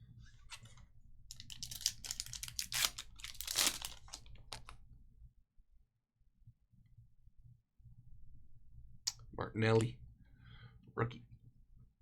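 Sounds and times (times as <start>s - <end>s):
wrapper tearing and crinkling: 1.3s - 4.7s.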